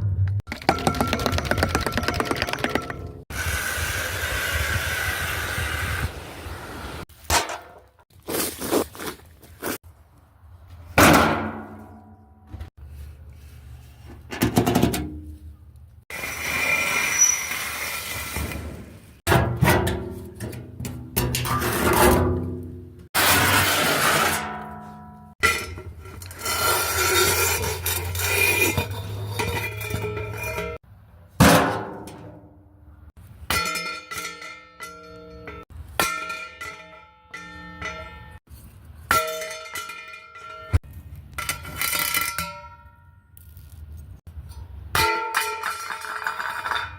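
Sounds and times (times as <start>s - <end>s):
metal scraping and rattling: 18.4s - 30.8s
ringing metal clang: 33.5s - 38.4s
ringing metal strikes: 33.5s - 38.4s.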